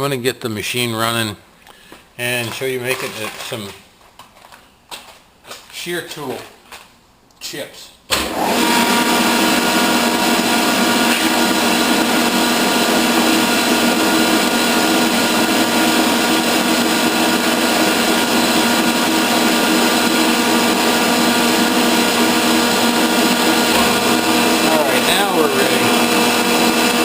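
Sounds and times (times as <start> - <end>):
metalworking machine whine: 22.2 - 27.0.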